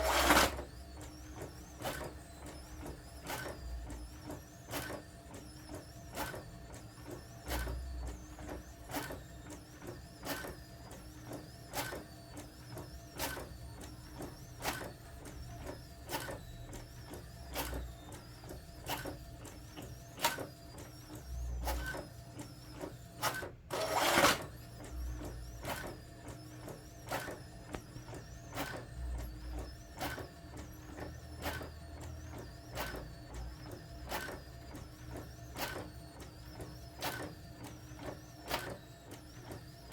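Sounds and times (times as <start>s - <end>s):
print mechanism clicking: 0.0s - 4.1s, 13.2s - 39.9s
inkjet printer printing: 0.0s - 39.9s.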